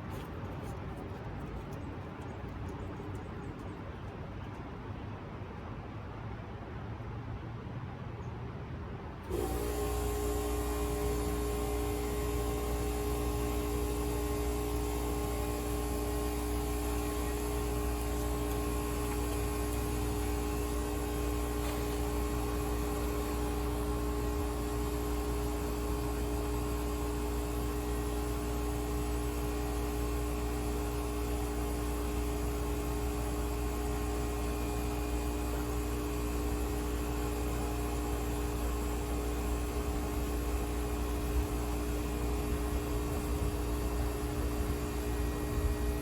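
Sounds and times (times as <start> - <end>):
air pump electric hum: 9.2 - 46.0.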